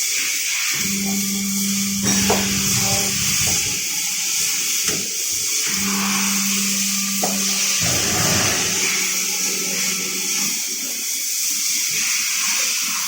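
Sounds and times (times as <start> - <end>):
drilling machine hissing: 0.5 - 11.1
low hum: 0.9 - 4.7, 5.7 - 10.4.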